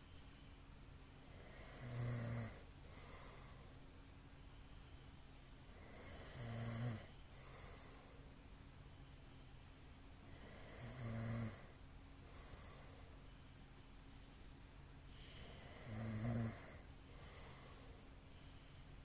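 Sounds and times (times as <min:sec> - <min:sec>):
breathy hiss: 0:01.2 - 0:03.8, 0:04.4 - 0:08.3, 0:08.9 - 0:19.0
man snoring: 0:01.3 - 0:03.7, 0:05.8 - 0:08.2, 0:10.2 - 0:11.7, 0:15.3 - 0:18.0.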